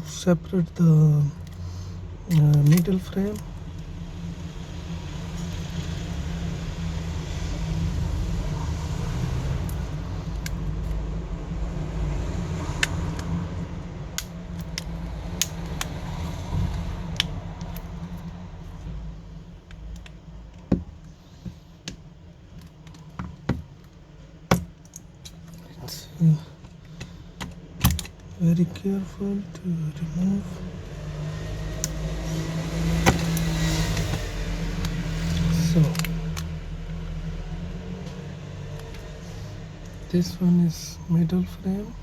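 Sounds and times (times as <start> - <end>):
low rumble: 0.0 - 40.2
tool prying phone frame clicks: 24.5 - 25.4.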